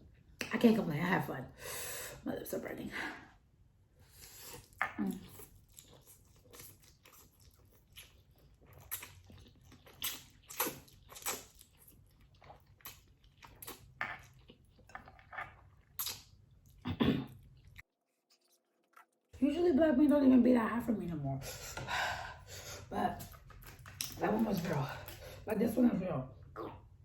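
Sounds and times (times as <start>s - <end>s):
wet chewing mouth clicks: 4.5s - 16.3s.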